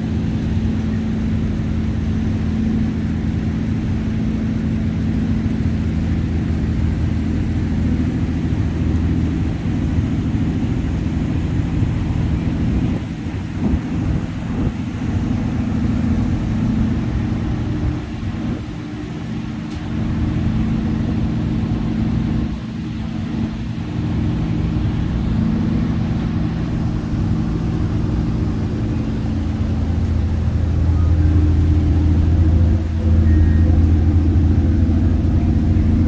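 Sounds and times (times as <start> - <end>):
boat engine humming: 0.0 - 36.0.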